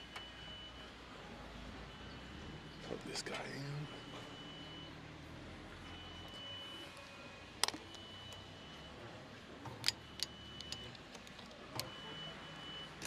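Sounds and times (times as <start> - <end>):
warning alarm beeping: 9.9 - 11.1, 11.7 - 13.0.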